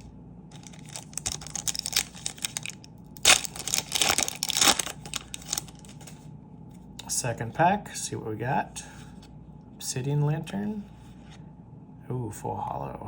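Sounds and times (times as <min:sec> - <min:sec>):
foil wrapper crinkling and tearing: 0:00.5 - 0:06.2.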